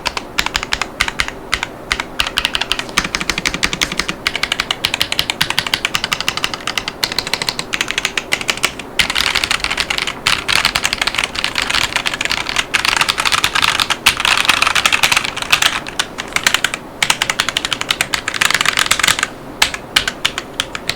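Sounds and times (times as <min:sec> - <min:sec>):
fast typing on mechanical keyboard: 0:00.0 - 0:20.9.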